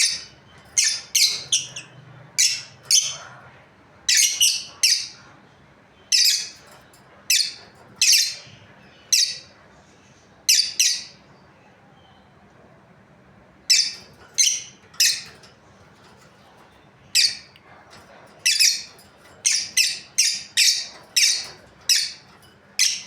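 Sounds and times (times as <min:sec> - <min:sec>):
lovebirds shrill calls: 0:00.0 - 0:03.3, 0:04.1 - 0:05.2, 0:06.0 - 0:06.7, 0:07.3 - 0:09.5, 0:13.7 - 0:15.4, 0:17.1 - 0:17.6, 0:18.4 - 0:23.0.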